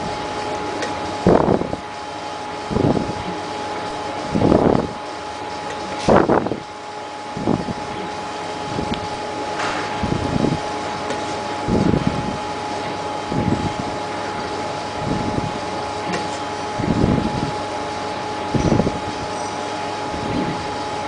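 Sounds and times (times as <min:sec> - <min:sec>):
high whine: 0:07.3 - 0:17.6
low pulsing rumble: 0:08.6 - 0:12.6.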